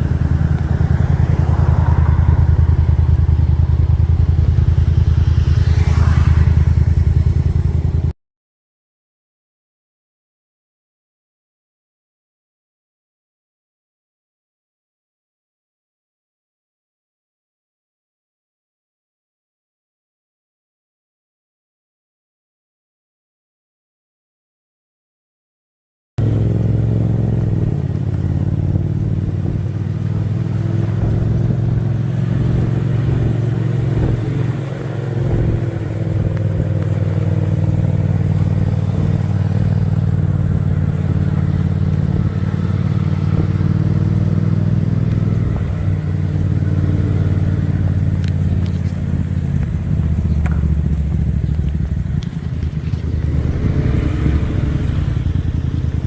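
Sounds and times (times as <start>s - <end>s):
motorcycle engine running: 0.0s - 8.1s, 26.2s - 56.0s.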